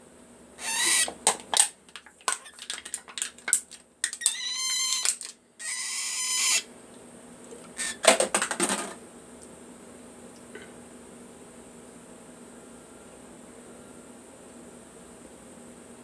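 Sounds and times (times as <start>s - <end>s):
cockatiel hissing squawk: 0.6s - 1.2s, 4.2s - 6.7s, 7.8s - 8.0s
cockatiel screeching: 0.6s - 1.7s, 4.2s - 6.7s, 7.8s - 8.1s.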